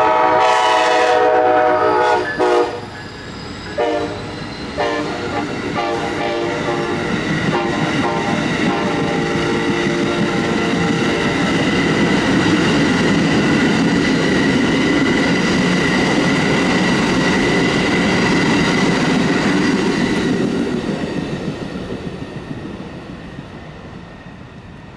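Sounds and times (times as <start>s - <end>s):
train horn: 0.0s - 3.0s, 3.7s - 11.5s
train wheels on rails: 0.0s - 24.9s.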